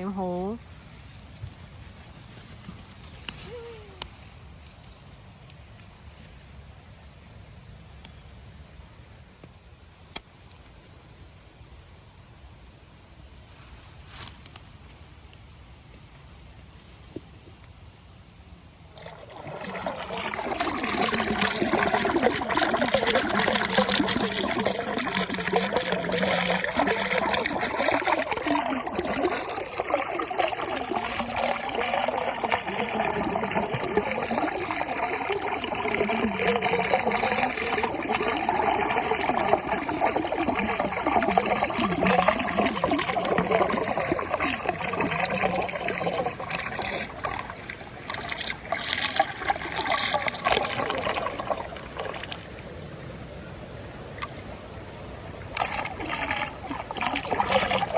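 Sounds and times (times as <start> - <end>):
water trickling and babbling: 1.8 - 4.3, 18.8 - 57.9.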